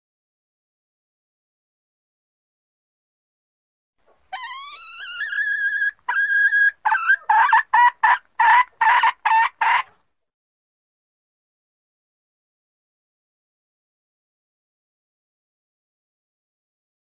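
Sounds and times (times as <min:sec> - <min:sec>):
hen calling and clucking: 0:04.1 - 0:10.0.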